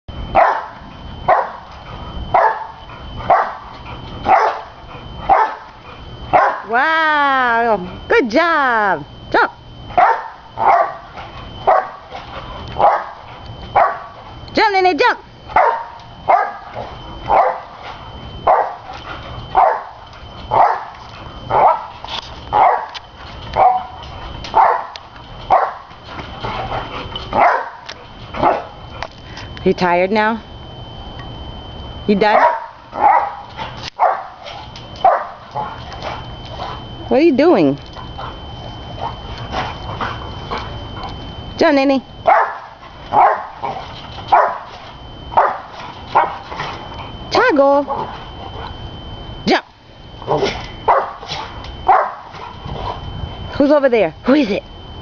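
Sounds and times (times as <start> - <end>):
dog barking: 0.4 - 1.6, 2.3 - 3.7, 4.3 - 5.7, 6.3 - 6.7, 10.0 - 12.1, 12.8 - 14.2, 15.5 - 16.7, 17.3 - 17.7, 18.5 - 18.8, 19.6 - 20.9, 21.5 - 21.9, 22.6 - 23.0, 23.6 - 25.9, 27.4 - 28.7, 32.4 - 33.4, 34.0 - 35.4, 42.2 - 44.7, 45.4 - 46.4, 50.9 - 52.3.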